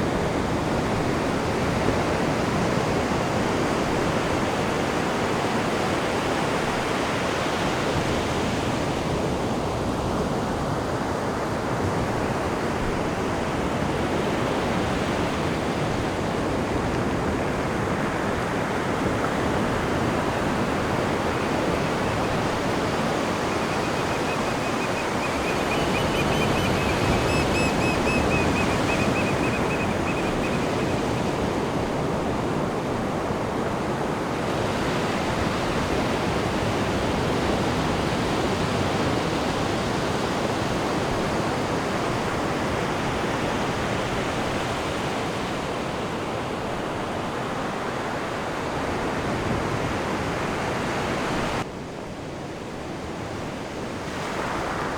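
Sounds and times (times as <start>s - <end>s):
surf washing onto beach: 7.3s - 39.8s
high chirps: 23.2s - 31.3s.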